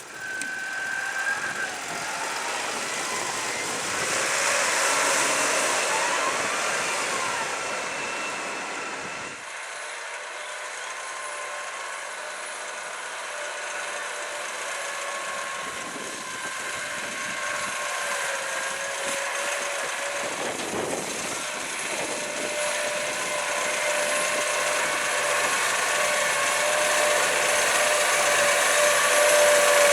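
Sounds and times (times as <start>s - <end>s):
tractor engine under load: 0.0s - 5.8s, 13.5s - 29.9s.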